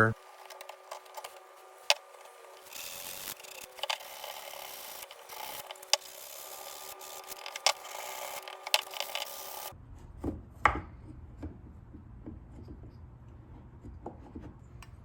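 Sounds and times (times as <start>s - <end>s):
tools scraping on wood: 0.2s - 9.7s.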